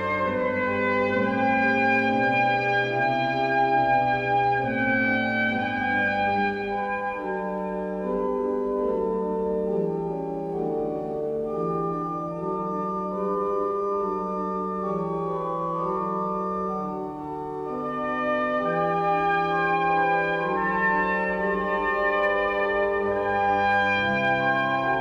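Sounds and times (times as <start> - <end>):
pipe organ playing chords: 0.0 - 25.0.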